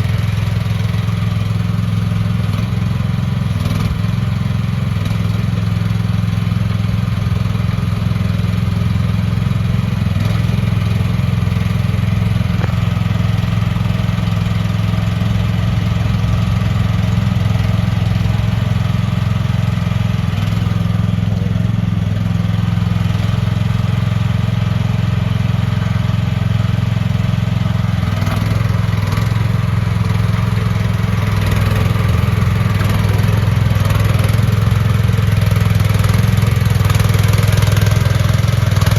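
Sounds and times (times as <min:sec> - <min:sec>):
mini excavator engine running: 0:00.0 - 0:38.9.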